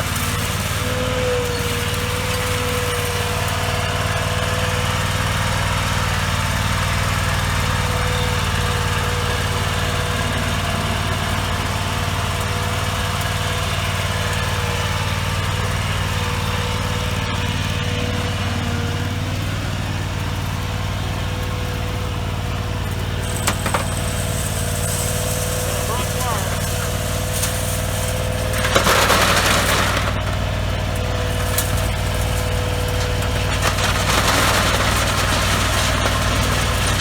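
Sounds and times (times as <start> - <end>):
lawn mower engine running: 0.0 - 37.0.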